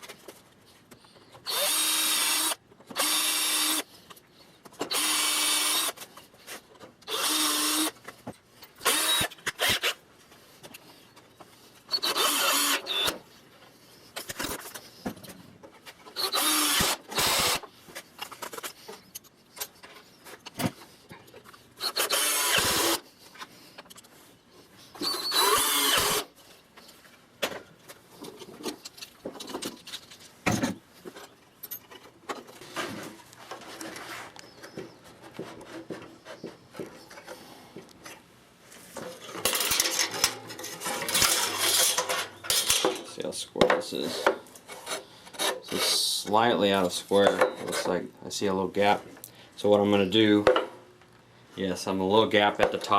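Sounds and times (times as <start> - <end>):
power drill bursts: 1.5 - 3.8, 4.9 - 6.0, 7.1 - 7.9, 8.8 - 10.0, 11.9 - 13.2, 16.2 - 17.6, 21.8 - 23.0, 25.0 - 26.3.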